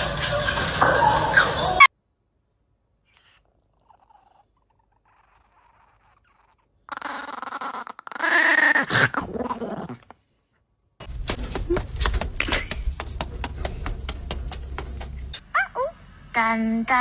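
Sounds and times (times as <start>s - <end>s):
dog vocalizing: 3.4s - 10.0s.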